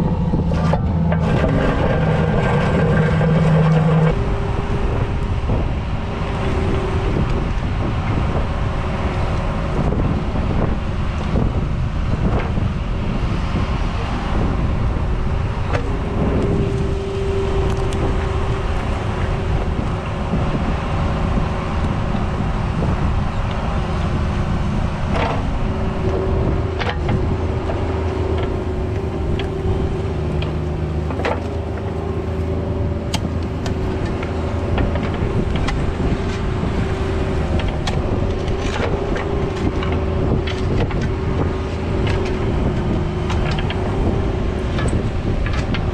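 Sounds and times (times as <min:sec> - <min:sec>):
excavator diesel engine running: 0:00.0 - 0:45.9
steady whine: 0:00.0 - 0:45.9
sharp knocks and scrapes: 0:00.3 - 0:04.2.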